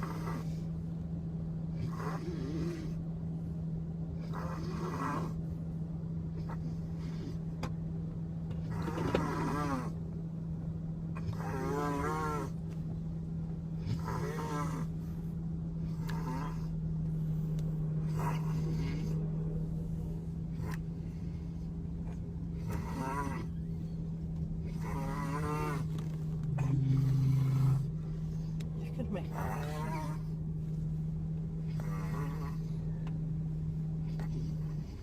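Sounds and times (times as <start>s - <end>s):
woman snoring heavily: 0.0s - 0.7s, 1.8s - 3.0s, 4.2s - 5.4s, 8.7s - 10.0s, 11.2s - 12.6s, 13.8s - 15.0s, 15.8s - 16.8s, 18.0s - 20.8s, 22.6s - 23.6s, 24.6s - 28.0s, 29.2s - 30.4s, 31.6s - 32.9s
car hum: 0.0s - 35.0s.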